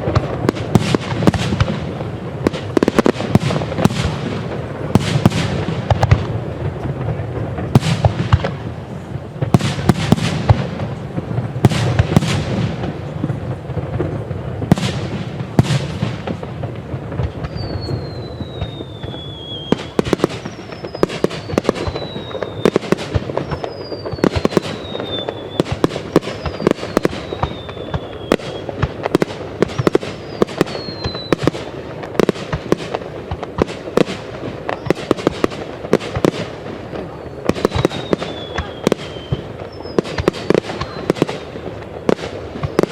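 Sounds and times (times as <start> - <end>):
fireworks bursts and crackling bangs: 0.0 - 42.9
high whistles falling in pitch: 17.4 - 25.7, 26.3 - 28.7, 29.8 - 31.4, 37.2 - 41.1.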